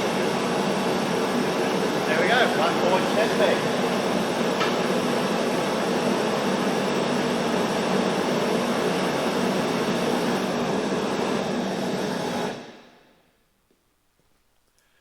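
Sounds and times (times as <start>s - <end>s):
gas forge burners rushing: 0.0s - 13.1s.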